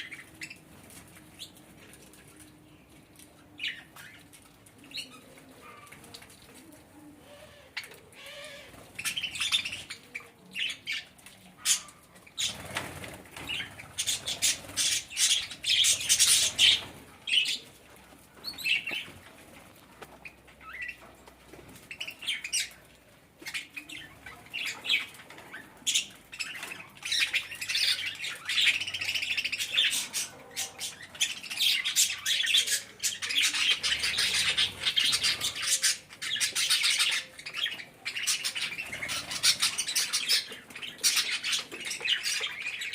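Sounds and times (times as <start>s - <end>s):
budgerigars chattering and chirping: 7.7s - 17.7s, 18.4s - 19.2s, 20.1s - 21.1s, 21.8s - 22.8s, 23.4s - 42.9s.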